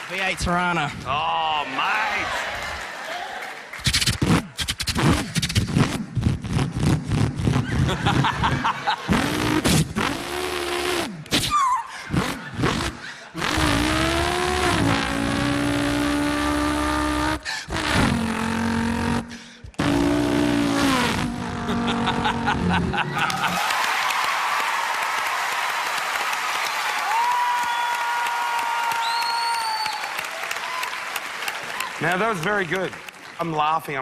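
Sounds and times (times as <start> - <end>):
audience applauding: 0.0 - 0.8, 1.5 - 4.5, 22.8 - 34.0
man imitating car engine: 9.1 - 23.6.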